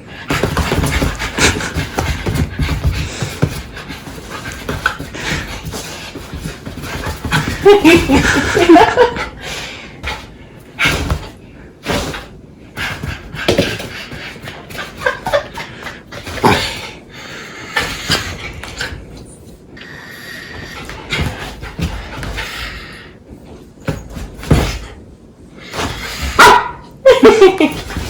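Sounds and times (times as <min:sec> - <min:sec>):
dog panting and snuffling: 0:00.0 - 0:25.0.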